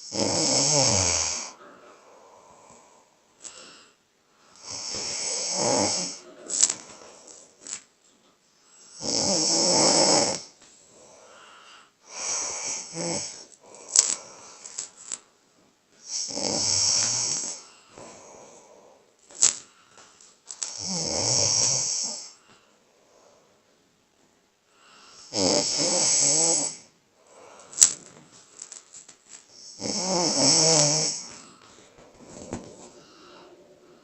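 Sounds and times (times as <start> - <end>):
person snoring loudly: 0.0 - 1.6, 4.6 - 7.3, 8.9 - 10.6, 12.1 - 15.1, 16.0 - 18.6, 20.6 - 22.4, 25.2 - 28.0, 29.5 - 31.6.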